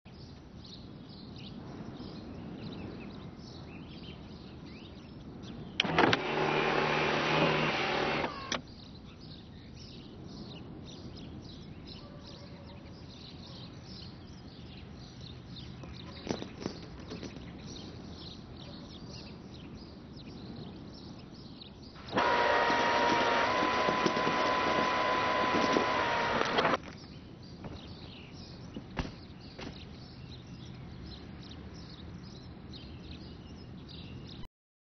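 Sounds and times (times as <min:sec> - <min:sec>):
birds chirping: 0:00.1 - 0:34.5.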